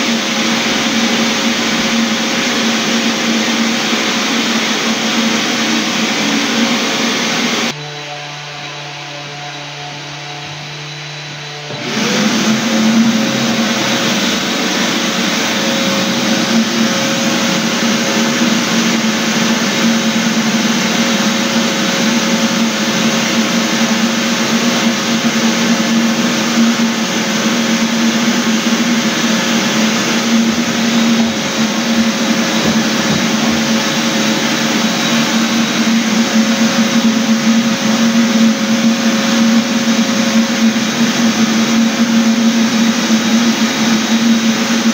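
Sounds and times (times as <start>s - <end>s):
floor sanding machine running: 0.0s - 44.9s.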